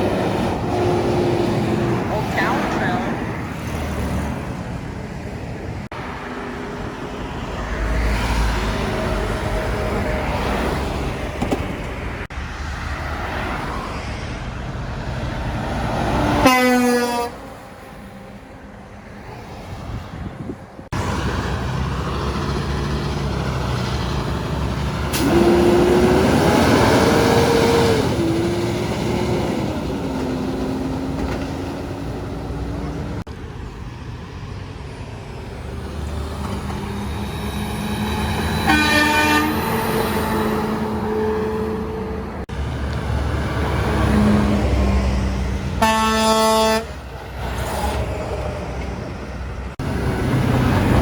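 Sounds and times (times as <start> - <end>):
heavy trucks passing: 0.0 - 51.0
truck air horn: 16.4 - 17.5, 38.6 - 42.2, 45.8 - 47.0
wavering horn note: 38.7 - 39.8.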